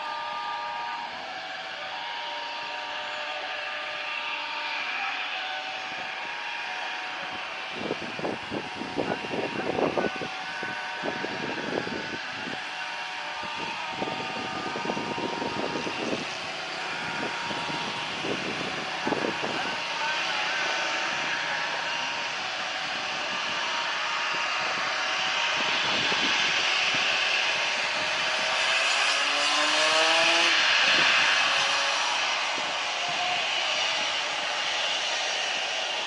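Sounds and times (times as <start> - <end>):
distant jet engines running: 0.0 - 36.0
nearby voices: 8.7 - 11.8, 17.2 - 24.9, 32.4 - 36.0.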